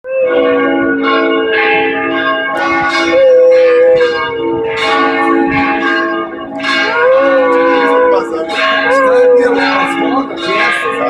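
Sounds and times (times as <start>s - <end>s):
dog howling: 0.1s - 1.0s, 2.6s - 10.0s
church bells ringing: 0.1s - 11.0s.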